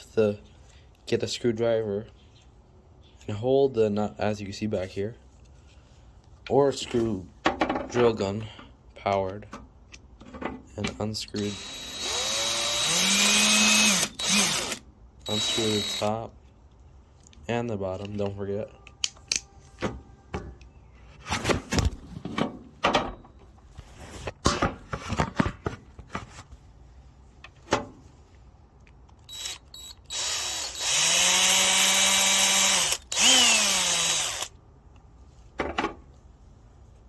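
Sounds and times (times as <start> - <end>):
cordless power drill running: 11.4 - 16.1, 29.3 - 34.5.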